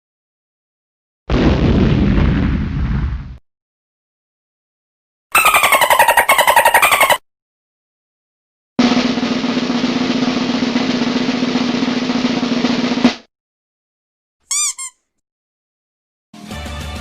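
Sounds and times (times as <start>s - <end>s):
snare drum roll: 8.8s - 13.3s.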